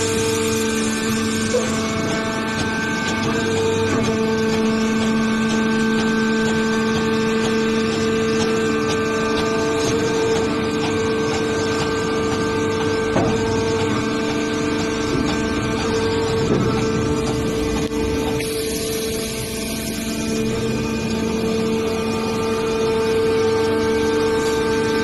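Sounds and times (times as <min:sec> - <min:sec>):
hydraulic baler motor whine: 0:00.0 - 0:25.0
knock: 0:13.2 - 0:13.5.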